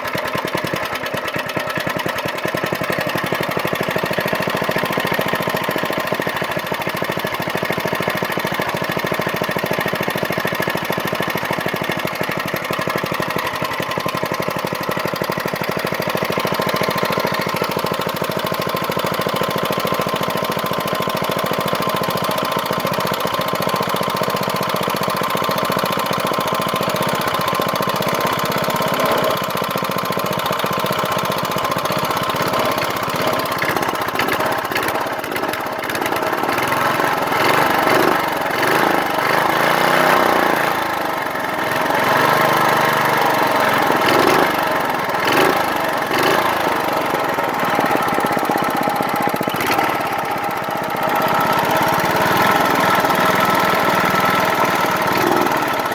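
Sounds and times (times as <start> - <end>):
small engine running: 0.0 - 55.9.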